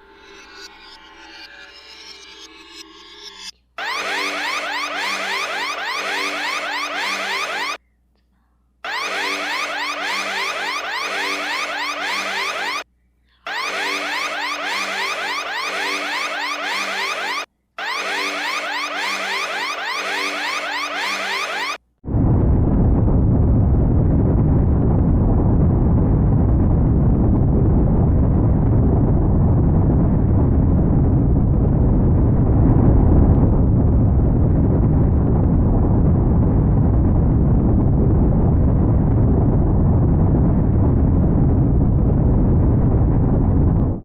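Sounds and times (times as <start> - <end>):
low rumbling noise: 22.0 - 44.0.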